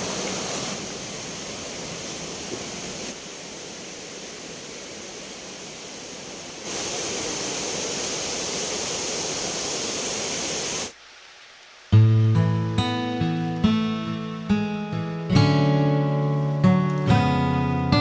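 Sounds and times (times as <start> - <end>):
spring water running: 0.0 - 11.0.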